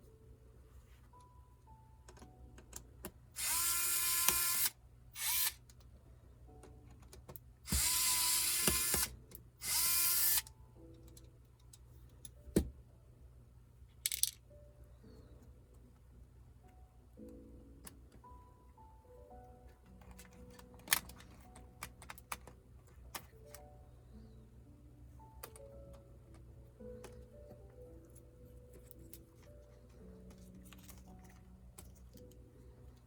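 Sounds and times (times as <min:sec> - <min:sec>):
electric screwdriver running: 0:03.4 - 0:05.6, 0:07.7 - 0:10.4.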